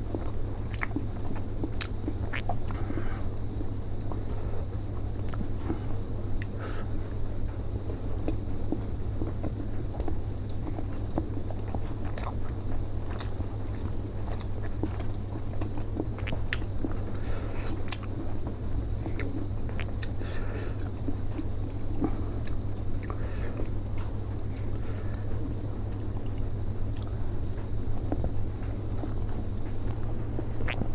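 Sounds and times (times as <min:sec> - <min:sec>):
steady low hum: 0:00.0 - 0:30.9
wet mouth clicks: 0:01.8 - 0:02.8, 0:19.2 - 0:20.2
person biting and chewing: 0:12.2 - 0:12.4.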